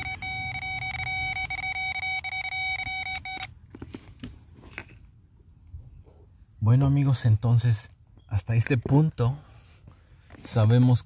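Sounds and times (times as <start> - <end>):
multimeter continuity beep: 0.0 - 3.5.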